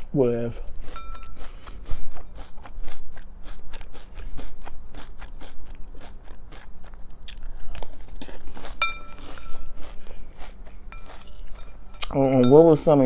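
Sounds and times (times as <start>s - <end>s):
person chewing crunchy cereal: 0.0s - 12.2s
spoon clinking against bowl: 1.0s - 1.4s, 8.8s - 9.6s, 10.9s - 12.9s.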